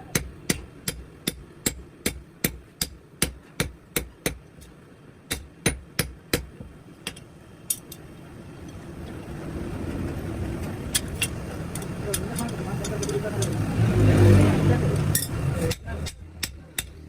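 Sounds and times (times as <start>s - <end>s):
hammer striking iron: 0.0s - 4.7s, 5.3s - 8.0s.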